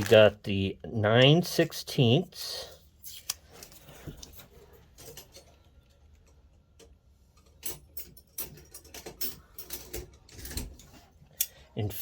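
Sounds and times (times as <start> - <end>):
packaging being handled: 0.0 - 0.4.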